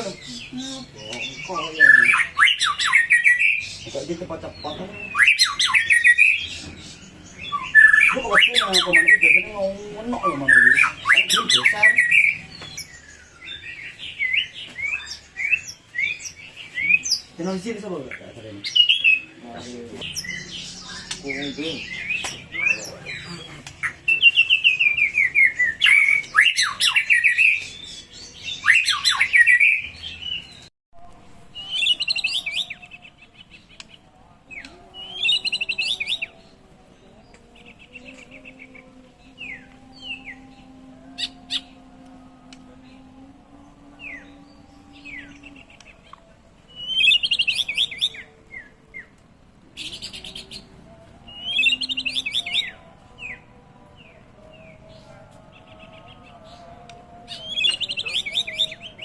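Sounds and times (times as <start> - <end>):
bird singing chirps and trills: 0.0 - 59.0.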